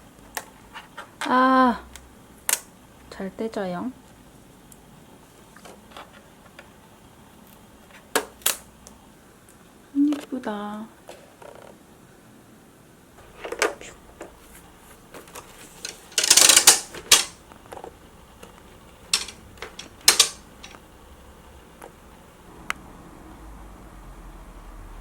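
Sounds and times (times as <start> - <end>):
folding fan plastic clicks: 0.1 - 2.7, 7.4 - 10.3, 15.1 - 20.9.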